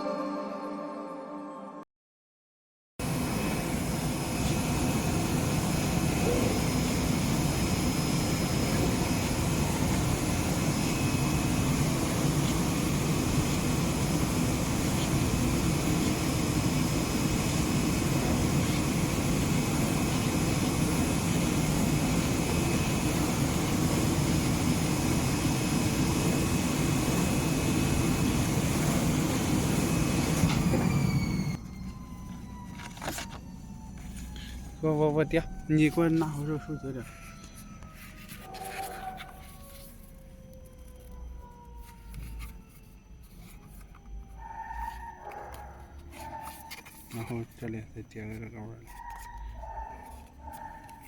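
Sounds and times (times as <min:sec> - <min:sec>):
cutting machine drone: 0:03.0 - 0:38.4
high-pitched whines: 0:03.0 - 0:51.0.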